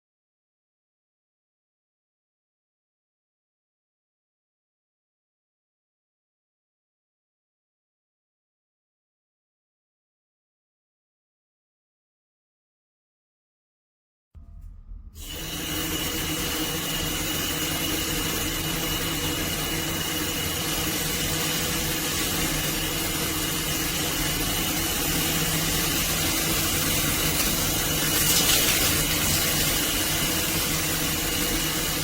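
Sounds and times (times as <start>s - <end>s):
shower head spraying water: 24.7s - 32.0s.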